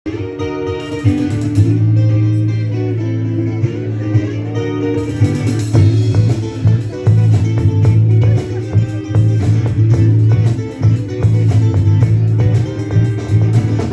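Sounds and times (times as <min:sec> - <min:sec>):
electric guitar playing: 0:00.1 - 0:13.9
drums and cymbals: 0:00.8 - 0:01.8, 0:05.0 - 0:13.9
low bass note: 0:05.4 - 0:13.9.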